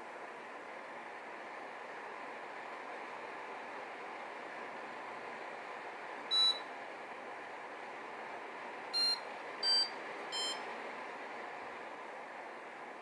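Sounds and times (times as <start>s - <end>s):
air conditioner hissing: 0.0s - 13.0s
short electronic beeps: 6.3s - 6.6s, 9.0s - 10.6s.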